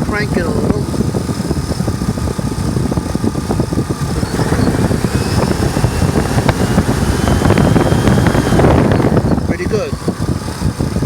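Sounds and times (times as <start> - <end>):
car engine revving: 4.0 - 10.7.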